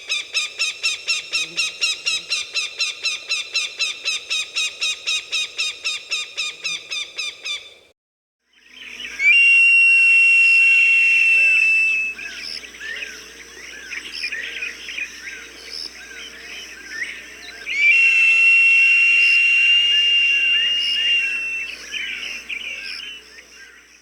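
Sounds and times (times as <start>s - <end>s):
hawk whistled calls: 9.2s - 12.3s, 17.7s - 23.0s.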